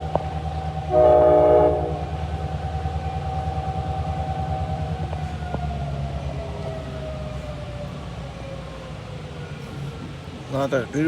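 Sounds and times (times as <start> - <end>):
diesel locomotive engine throbbing: 0.0 - 11.0
air horn blast: 0.9 - 2.2.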